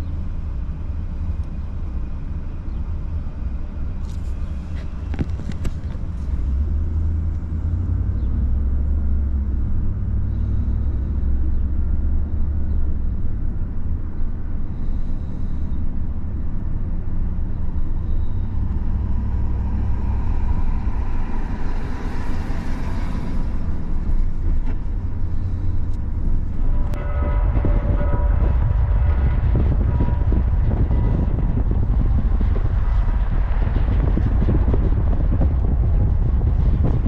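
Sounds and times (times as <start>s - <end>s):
traffic rumble: 0.0s - 37.0s
vehicle passing: 14.7s - 37.0s.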